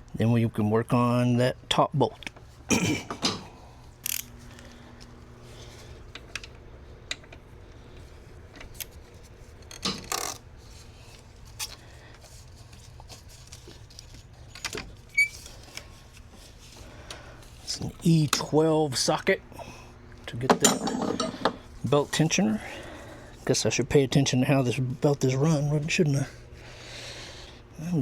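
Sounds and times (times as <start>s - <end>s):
metal tools clinking: 20.5s - 21.6s.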